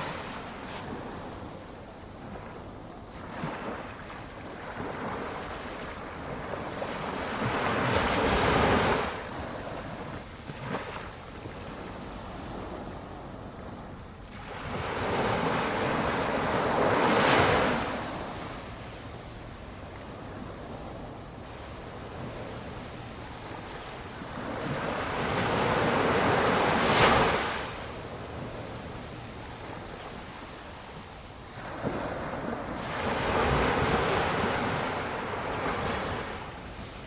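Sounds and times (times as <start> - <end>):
small waves breaking on shore: 0.0 - 37.0.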